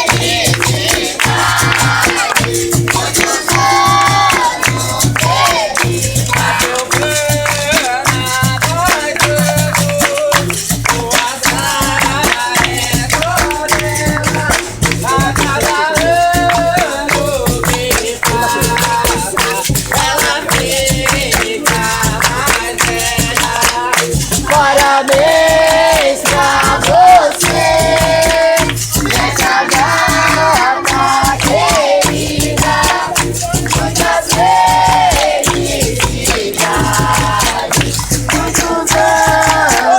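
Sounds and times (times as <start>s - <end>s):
berimbau: 0.0s - 39.9s
group singing call-and-response: 0.0s - 39.9s
hand clapping: 0.0s - 39.9s.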